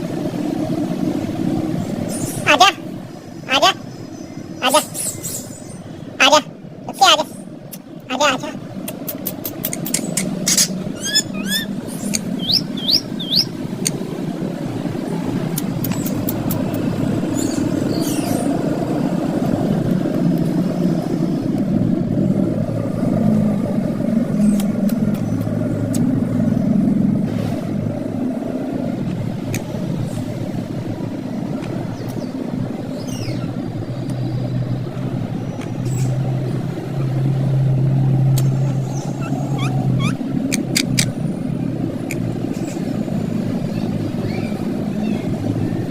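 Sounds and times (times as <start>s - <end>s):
engine: 0.0s - 45.9s
low rumble of traffic: 0.0s - 45.9s
parrot chirping: 9.0s - 14.0s, 38.5s - 41.2s.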